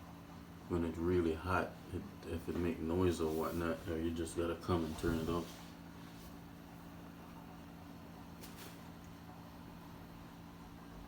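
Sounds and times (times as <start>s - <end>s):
faint electrical hum: 0.0s - 11.0s
soft rustle: 2.4s - 6.6s, 8.4s - 9.1s.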